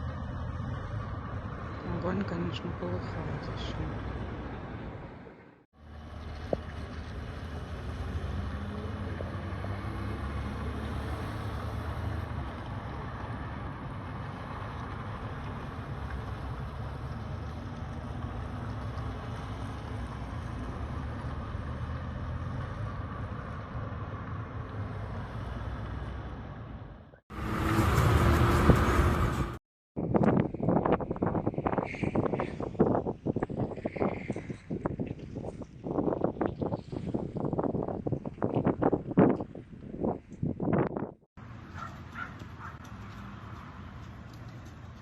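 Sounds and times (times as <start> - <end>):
low outdoor rumble: 0.0 - 32.5
wind buffeting microphone: 27.4 - 45.0.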